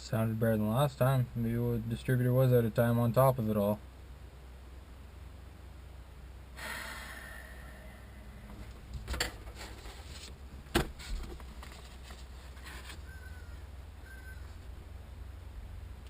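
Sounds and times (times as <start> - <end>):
low steady hum: 0.0 - 16.0
scraping rustle: 8.5 - 13.4.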